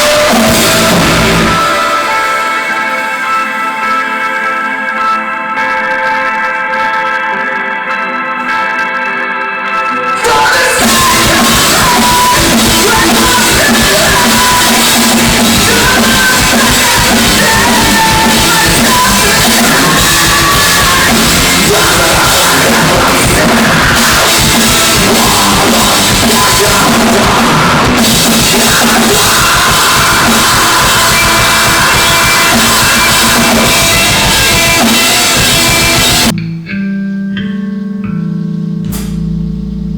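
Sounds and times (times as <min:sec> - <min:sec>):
heavy metal band playing: 0:00.0 - 0:39.9
quiet electric guitar passage: 0:33.9 - 0:39.9.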